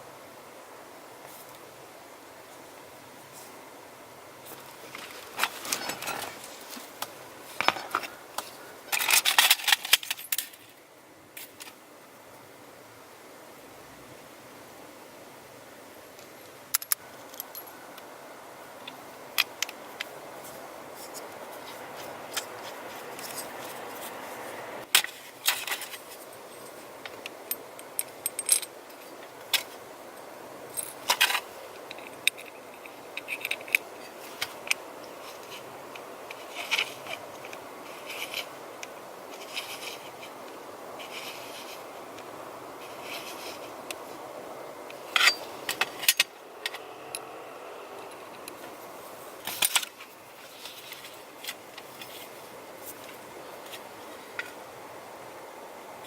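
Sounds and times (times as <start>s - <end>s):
steady background hiss: 0.0s - 56.0s
metal parts and tools clinking: 4.9s - 6.8s, 8.9s - 10.7s, 16.7s - 17.8s, 24.9s - 29.7s, 30.7s - 35.6s, 45.0s - 47.3s.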